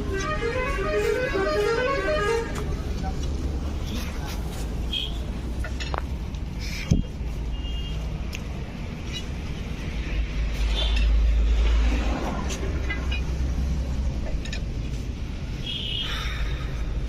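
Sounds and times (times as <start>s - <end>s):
excavator diesel engine rumbling: 8.2s - 17.0s.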